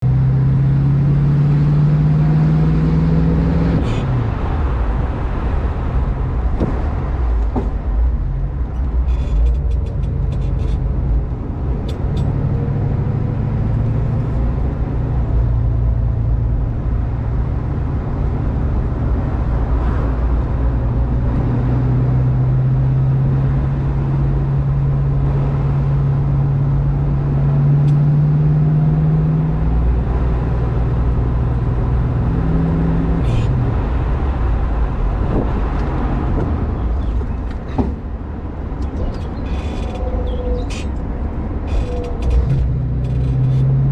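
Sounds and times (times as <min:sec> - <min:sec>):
car engine: 0:00.0 - 0:43.9
sharp knocks: 0:06.6 - 0:06.9.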